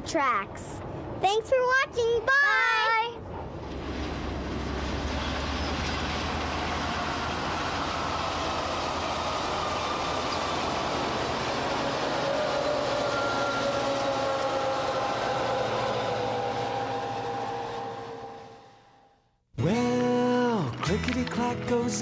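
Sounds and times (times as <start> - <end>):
train wheels rumbling and rattling: 3.2 - 18.8.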